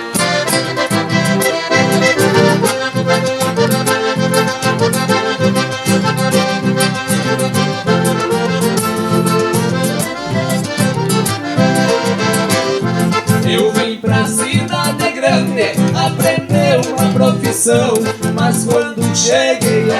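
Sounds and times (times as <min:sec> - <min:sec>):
band accompaniment: 0:00.0 - 0:18.9
accordion melody: 0:00.0 - 0:19.9
bouncing bass beat: 0:00.2 - 0:05.4, 0:07.8 - 0:18.1.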